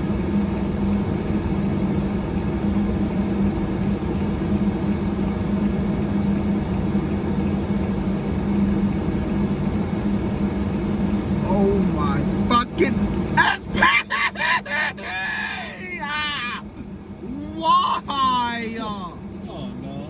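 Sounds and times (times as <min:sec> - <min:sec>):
car engine humming: 0:00.0 - 0:20.0.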